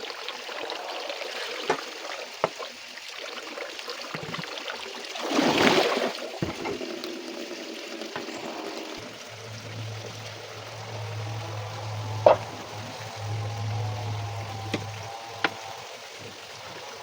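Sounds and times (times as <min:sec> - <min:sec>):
water running and trickling: 0:00.0 - 0:17.0
low steady hum: 0:09.0 - 0:17.0.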